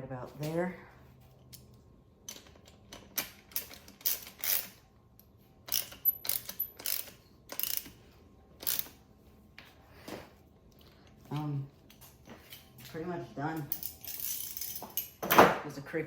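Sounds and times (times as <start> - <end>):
ratchet clicking: 2.3 - 4.8, 5.6 - 8.0, 8.6 - 9.0.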